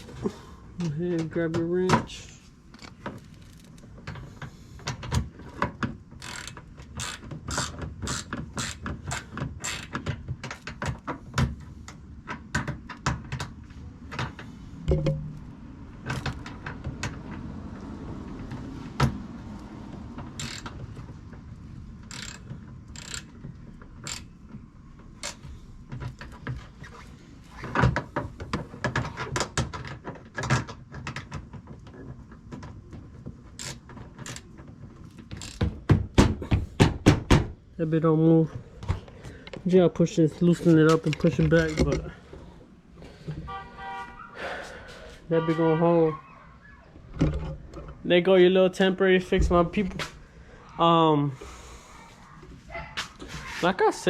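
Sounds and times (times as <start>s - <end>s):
ratchet wrench clicking: 6.2s - 10.0s, 20.4s - 20.8s, 22.0s - 23.4s, 24.0s - 24.3s, 25.2s - 25.4s, 33.6s - 34.4s, 35.3s - 35.6s.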